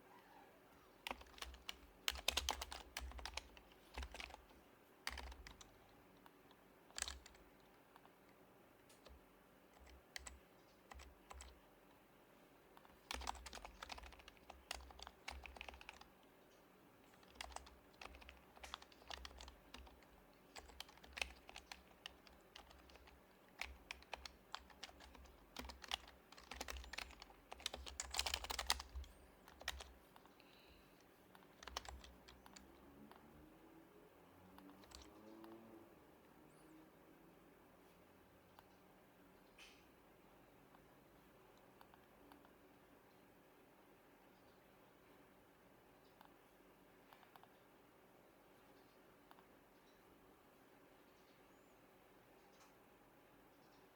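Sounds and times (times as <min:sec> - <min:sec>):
keyboard typing: 0:01.0 - 0:11.6, 0:12.8 - 0:16.2, 0:17.0 - 0:30.4, 0:31.3 - 0:33.3, 0:34.5 - 0:35.6.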